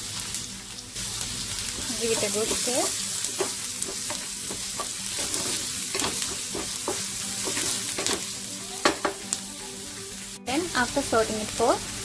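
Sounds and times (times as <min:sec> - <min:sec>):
onions sizzling in oil: 0:00.0 - 0:12.0
utensil scraping and knocking pan: 0:01.8 - 0:09.2.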